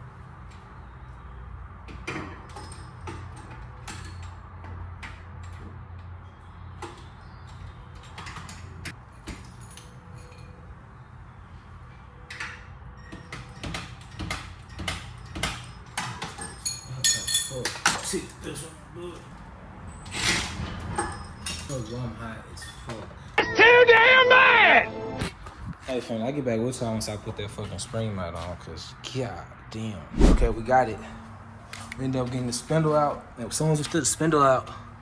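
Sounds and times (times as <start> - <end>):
hand tools clicking and knocking: 12.3 - 18.1.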